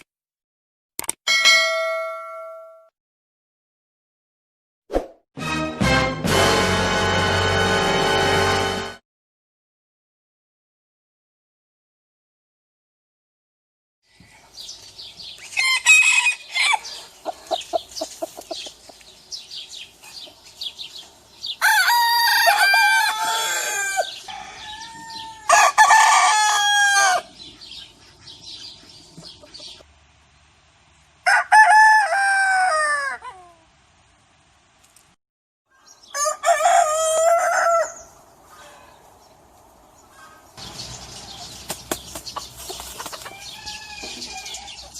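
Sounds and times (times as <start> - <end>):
rooster crowing: 15.6 - 17.0, 21.6 - 27.3, 31.2 - 33.3, 35.8 - 38.7, 43.3 - 44.8
chickens clucking and squawking: 15.6 - 19.1, 26.6 - 29.9, 40.1 - 44.9.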